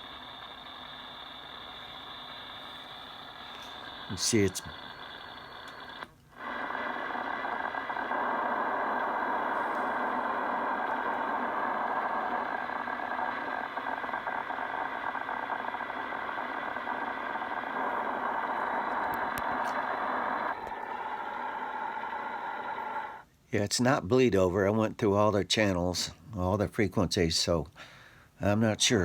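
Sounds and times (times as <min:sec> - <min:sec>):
radio crackle of clicks: 0:00.0 - 0:21.0.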